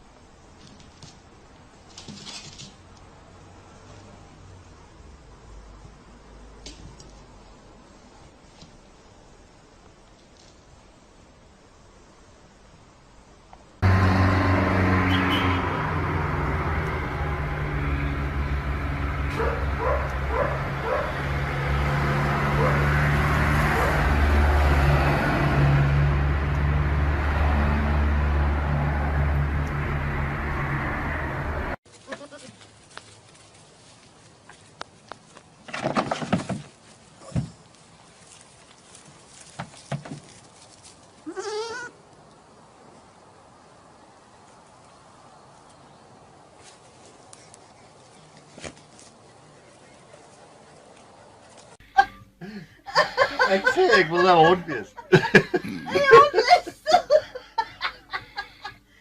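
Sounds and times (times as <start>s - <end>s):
knocks and scuffling: 0.5s - 3.1s, 31.8s - 41.3s, 46.5s - 49.4s
engine hum: 13.7s - 35.7s.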